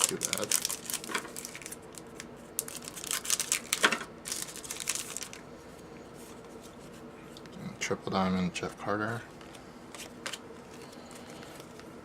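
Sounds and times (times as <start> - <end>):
papery crinkling and rustling: 0.0 - 5.4.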